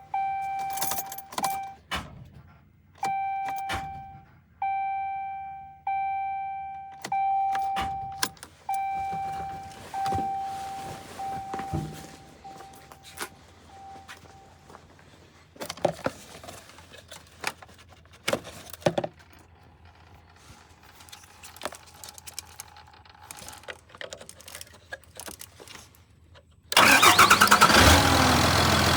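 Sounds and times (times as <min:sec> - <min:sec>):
dashboard warning chime: 0:00.0 - 0:01.8, 0:03.0 - 0:14.7
keys jangling: 0:00.5 - 0:01.8
engine starting: 0:26.7 - 0:28.9.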